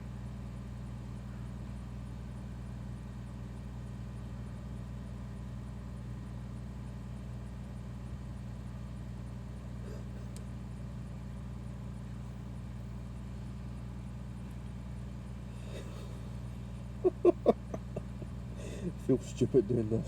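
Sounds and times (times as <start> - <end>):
steady low hum: 0.0 - 20.0
man making vocal noises: 18.6 - 20.0.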